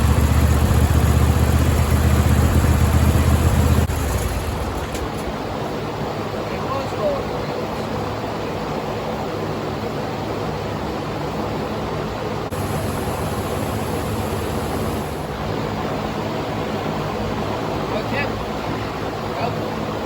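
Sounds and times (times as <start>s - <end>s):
lawn tractor engine running: 0.0s - 5.6s, 12.5s - 15.4s.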